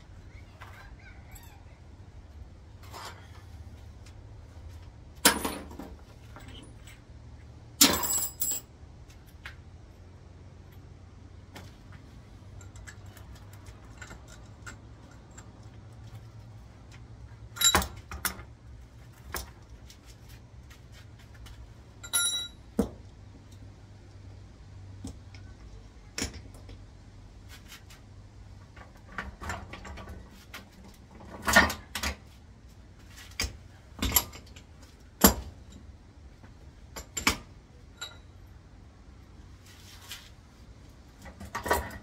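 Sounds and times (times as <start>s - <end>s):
metal tools clinking: 7.8s - 8.7s, 17.5s - 18.4s, 22.0s - 22.7s, 37.9s - 38.4s.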